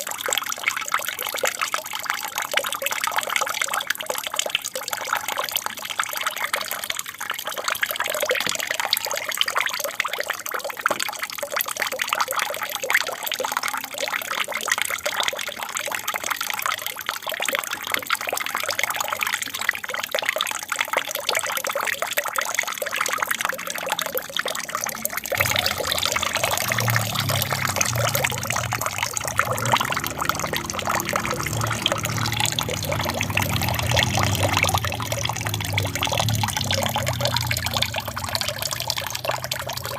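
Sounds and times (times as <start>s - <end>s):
water trickling and splashing: 0.0s - 39.9s.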